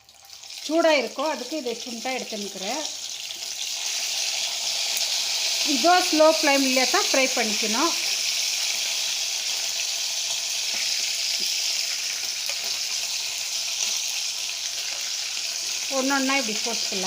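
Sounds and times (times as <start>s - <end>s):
chicken sizzling in hot oil: 0.0s - 17.0s.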